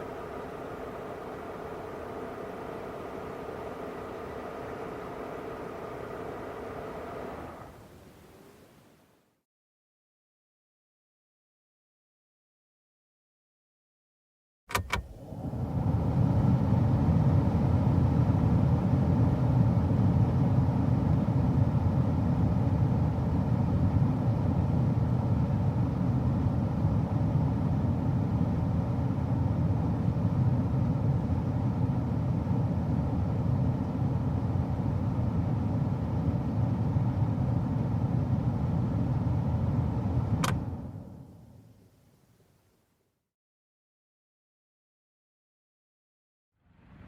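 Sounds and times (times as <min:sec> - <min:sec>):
car engine running: 0:00.0 - 0:07.8
short click: 0:14.7 - 0:15.1, 0:40.4 - 0:40.6.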